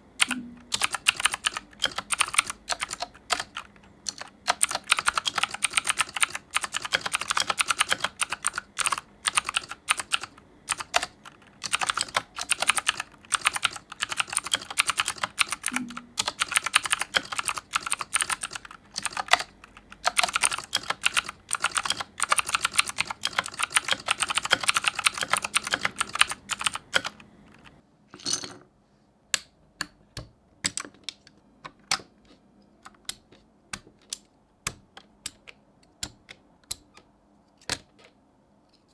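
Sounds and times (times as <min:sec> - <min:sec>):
keycaps clicking: 0:00.2 - 0:27.8, 0:29.8 - 0:38.2
mechanical keyboard typing: 0:00.2 - 0:27.8.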